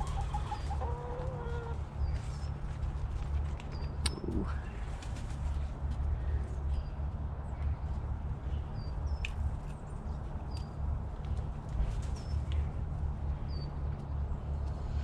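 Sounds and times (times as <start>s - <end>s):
chickens calling softly: 0.0s - 2.6s
steady low rumble: 0.0s - 15.0s.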